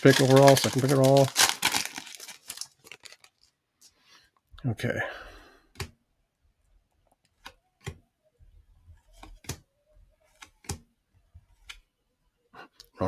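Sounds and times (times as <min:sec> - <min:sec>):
trading cards being flipped: 0:00.0 - 0:03.5.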